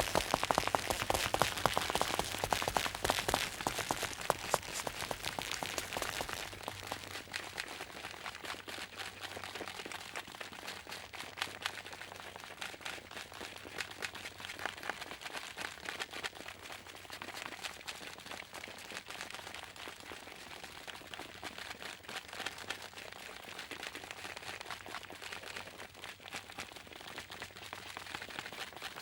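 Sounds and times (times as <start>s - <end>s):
crisp footsteps: 0.0s - 7.4s.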